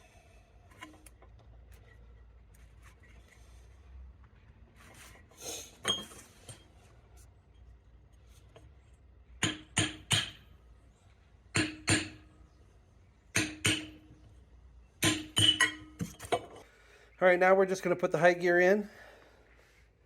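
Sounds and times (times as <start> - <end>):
metal on metal tapping: 13.3 - 14.1.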